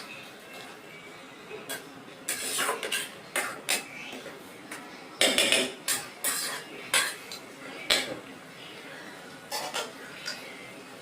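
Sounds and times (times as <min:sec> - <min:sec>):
metal spatula scraping a pan: 0:01.7 - 0:03.9, 0:05.7 - 0:07.2, 0:09.5 - 0:10.4.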